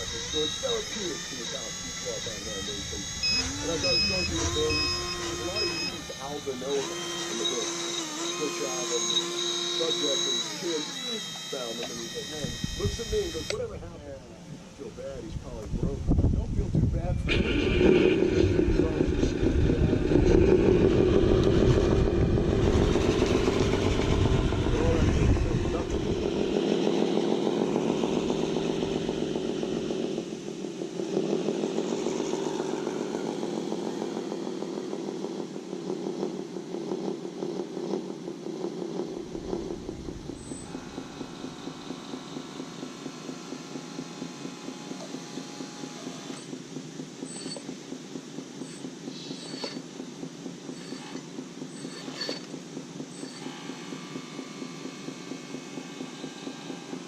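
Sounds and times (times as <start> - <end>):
toy truck motor whining: 0.0 - 13.7, 31.6 - 35.2, 39.1 - 46.5, 48.6 - 49.9, 50.7 - 57.0.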